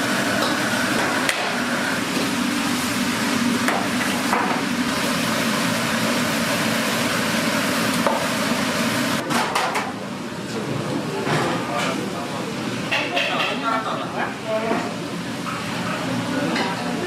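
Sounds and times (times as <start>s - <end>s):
frying hiss: 0.0s - 9.4s.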